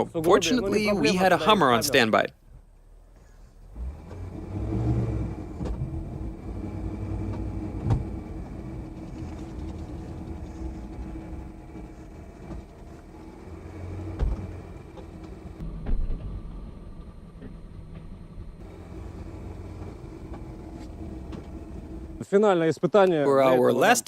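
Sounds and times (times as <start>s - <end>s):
car engine running: 3.7s - 22.2s.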